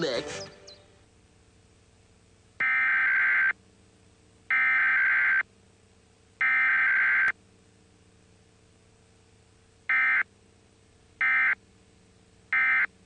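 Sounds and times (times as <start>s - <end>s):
buzzing data tone bursts: 2.6s - 3.6s, 4.5s - 5.5s, 6.4s - 7.4s, 9.9s - 10.3s, 11.2s - 11.6s, 12.5s - 12.9s.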